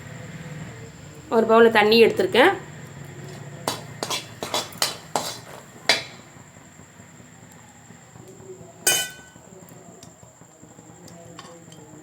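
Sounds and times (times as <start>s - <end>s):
metal spoon clinking on cookware: 3.7s - 6.2s, 8.9s - 9.4s.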